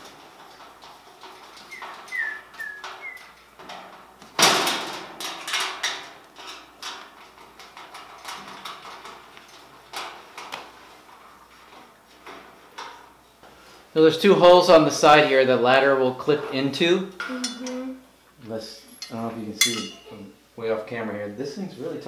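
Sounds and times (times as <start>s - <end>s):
iron bird cage parts clanking: 0.0s - 10.5s, 19.0s - 20.2s.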